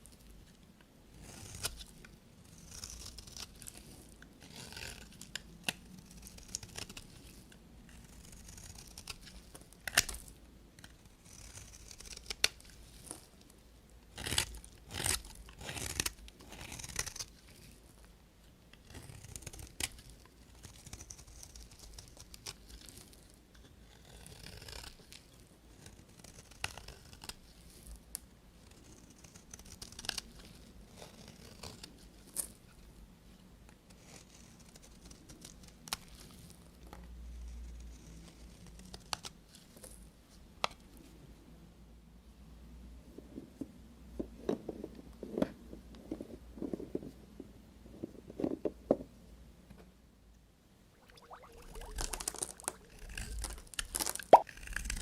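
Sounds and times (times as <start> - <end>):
knife scraping soap: 1.2 - 13.3, 14.1 - 17.8, 18.7 - 27.8, 28.7 - 31.8, 33.9 - 36.5, 52.9 - 55.0
knife crunching through soap: 2.6 - 7.4, 8.0 - 10.3, 14.1 - 17.7, 51.8 - 55.0.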